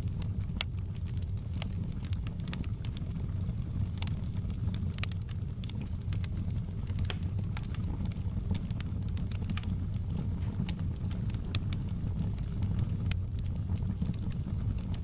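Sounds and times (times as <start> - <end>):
fire crackling and popping: 0.0 - 15.0.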